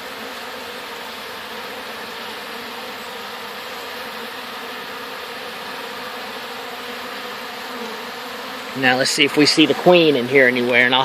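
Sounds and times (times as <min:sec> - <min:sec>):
honeybees buzzing: 0:00.0 - 0:11.0.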